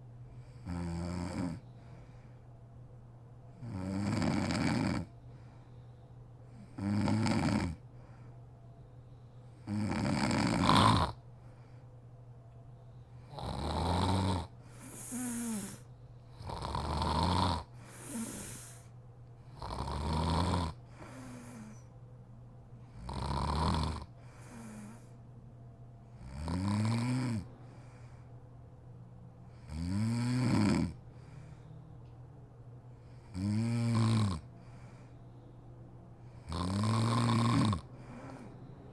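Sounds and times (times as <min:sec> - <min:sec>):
faint steady hum: 0:00.0 - 0:38.9
woman snoring: 0:00.5 - 0:01.6, 0:03.6 - 0:05.1, 0:06.6 - 0:07.8, 0:09.6 - 0:11.2, 0:13.3 - 0:18.9, 0:19.5 - 0:21.9, 0:23.0 - 0:25.1, 0:26.2 - 0:27.4, 0:29.6 - 0:31.0, 0:33.3 - 0:34.5, 0:36.3 - 0:38.6
soft out-breath: 0:01.6 - 0:02.6, 0:05.2 - 0:06.8, 0:07.9 - 0:09.7, 0:11.4 - 0:12.1, 0:14.6 - 0:16.0, 0:17.8 - 0:19.5, 0:20.9 - 0:22.0, 0:24.2 - 0:25.3, 0:31.1 - 0:32.1, 0:34.5 - 0:36.5, 0:37.9 - 0:38.9.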